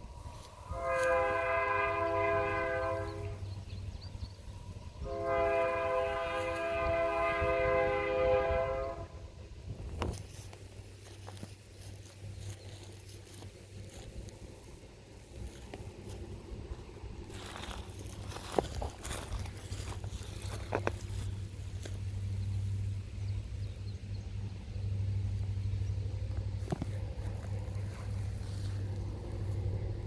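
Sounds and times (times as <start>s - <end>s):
distant locomotive air horn: 0.5s - 3.6s, 5.0s - 9.4s.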